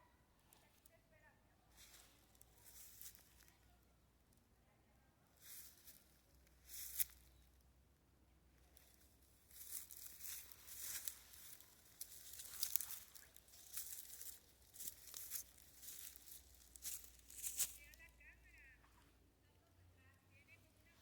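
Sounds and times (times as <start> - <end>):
rustling and crackling: 1.8 - 3.8, 5.4 - 7.4, 8.7 - 19.1.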